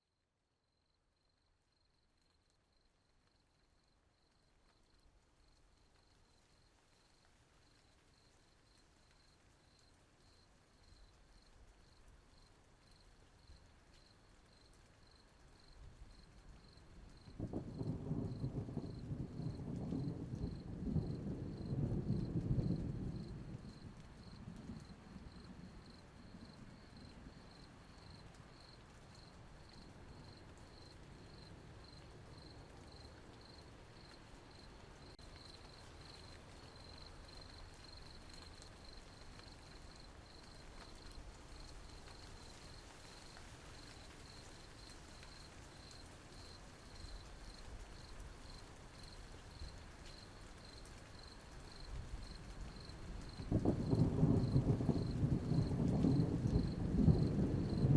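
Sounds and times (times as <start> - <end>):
cricket chirping: 0.6 - 57.9
light rain hiss: 1.2 - 57.9
thunder rumbling: 17.1 - 28.1, 52.0 - 57.9.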